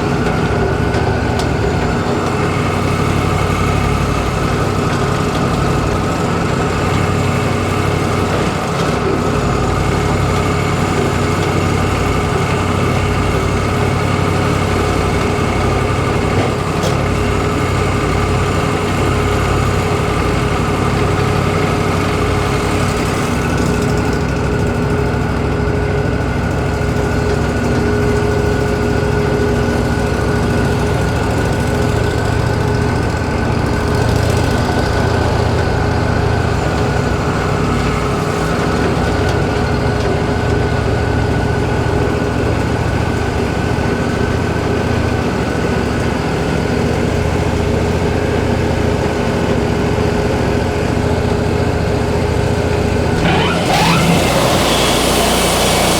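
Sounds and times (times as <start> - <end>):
sawmill engine drone: 0.0 - 55.9
high saw whine: 53.0 - 55.9.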